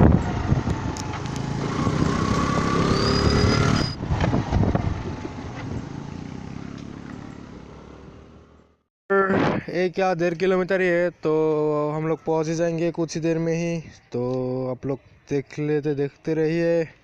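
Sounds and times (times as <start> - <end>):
vehicle engine and road noise: 0.0 - 8.9.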